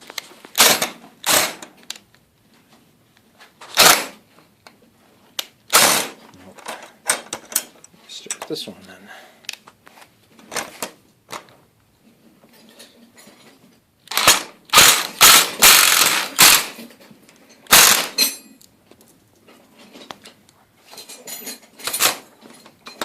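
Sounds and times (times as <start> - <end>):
power driver running a screw: 5.7 - 6.2, 14.1 - 16.8, 17.7 - 18.2.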